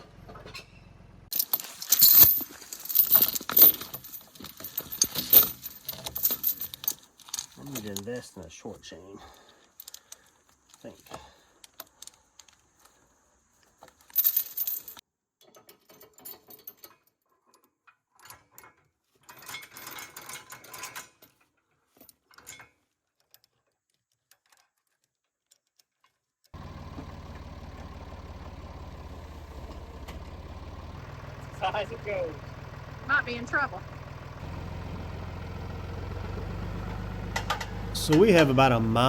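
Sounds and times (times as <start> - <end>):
metal chain clinking: 1.3 - 8.1, 14.0 - 15.0, 19.2 - 21.3, 37.4 - 39.0
tractor engine running: 26.6 - 39.0.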